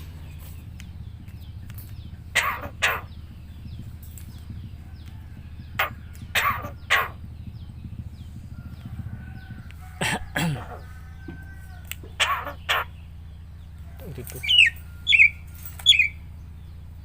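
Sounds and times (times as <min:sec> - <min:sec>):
steady low hum: 0:00.0 - 0:17.0
bird making cough-like bursts: 0:02.3 - 0:03.1, 0:06.3 - 0:07.2, 0:12.2 - 0:12.8.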